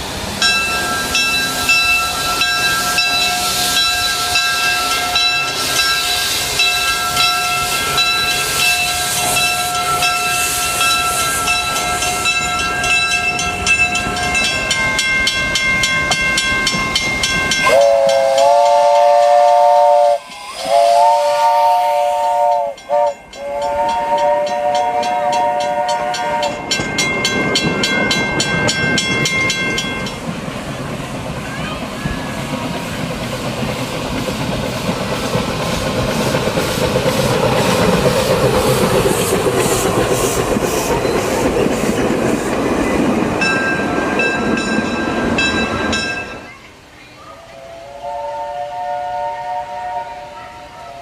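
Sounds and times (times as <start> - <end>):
steam hissing: 0.0 - 51.0
locomotive chime whistle: 0.4 - 30.2, 47.2 - 51.0.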